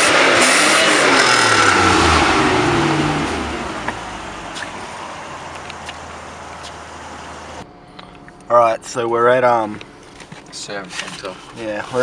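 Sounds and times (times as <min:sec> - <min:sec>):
car engine easing off: 0:00.0 - 0:07.6.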